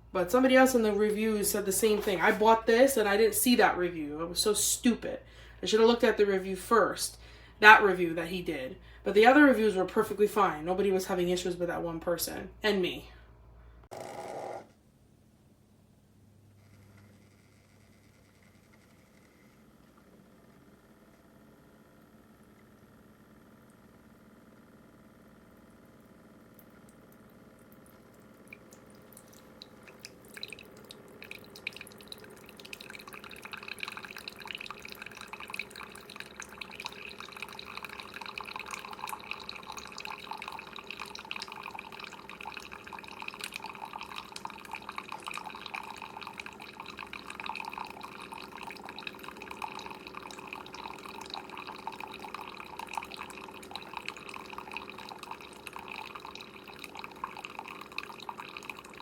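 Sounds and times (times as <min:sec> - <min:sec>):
coffee maker pump humming: 0:00.0 - 0:12.6, 0:13.8 - 0:14.8, 0:16.2 - 0:59.0
coffee streaming into cup: 0:00.2 - 0:03.8, 0:21.6 - 0:59.0.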